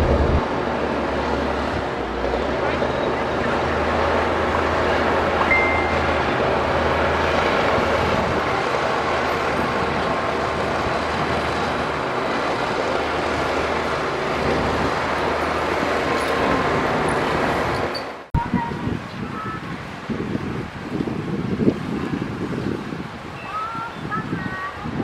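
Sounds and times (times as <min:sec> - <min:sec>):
heavy diesel machinery running: 0:00.0 - 0:18.4.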